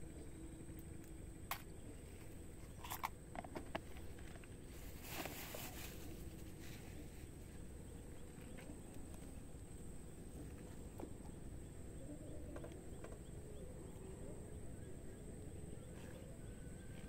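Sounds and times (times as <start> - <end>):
steady high-pitched whine: 0.0 - 17.0
short rustling: 4.7 - 7.2.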